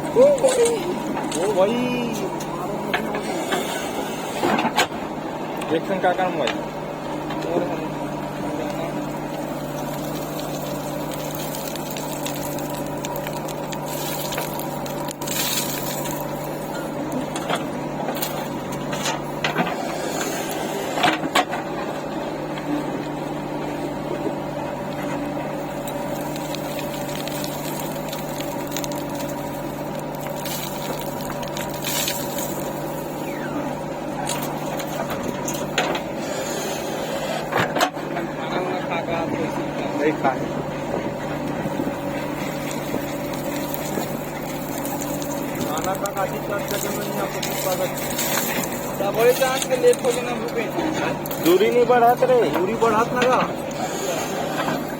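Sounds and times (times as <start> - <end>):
diesel engine running: 0.0 - 54.9.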